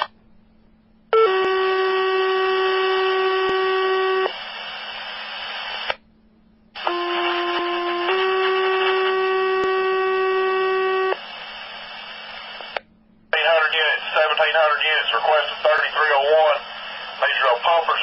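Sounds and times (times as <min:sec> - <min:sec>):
radio hiss: 0:04.1 - 0:06.0, 0:06.8 - 0:09.2, 0:10.7 - 0:18.0
radio paging tones: 0:06.8 - 0:12.8.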